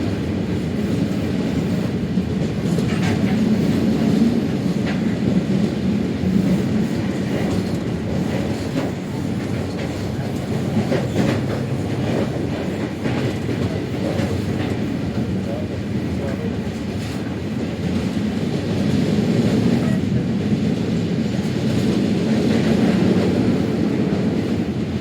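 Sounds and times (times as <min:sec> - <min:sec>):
train rumbling: 0:00.0 - 0:25.0
wheels clacking over rail joints: 0:01.6 - 0:20.1.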